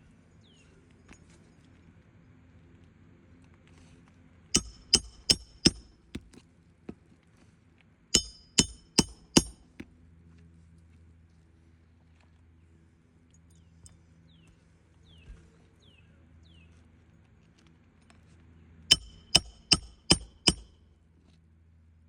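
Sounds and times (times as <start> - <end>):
hammer striking metal tool: 4.6 - 6.0, 8.2 - 9.7, 18.9 - 20.7.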